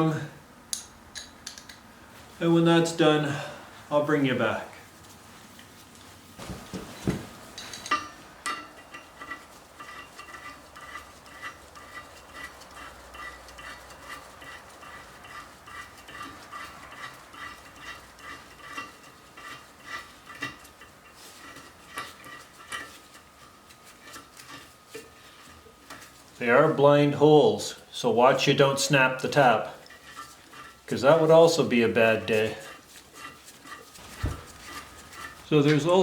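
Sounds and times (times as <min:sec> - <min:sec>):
metal tap clicking and scraping: 0:00.7 - 0:01.8.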